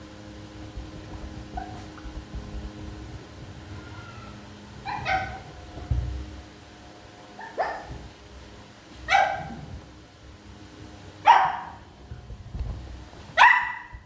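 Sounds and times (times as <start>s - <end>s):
small dog barking: 3.9s - 5.6s, 7.4s - 8.0s, 9.1s - 9.7s, 11.2s - 11.8s, 13.4s - 14.0s.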